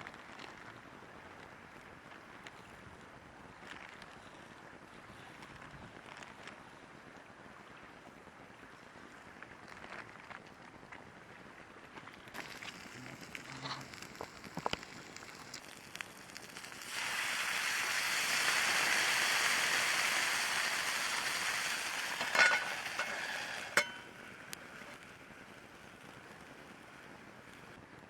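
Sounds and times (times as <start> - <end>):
food sizzling in a pan: 12.4 - 26.9.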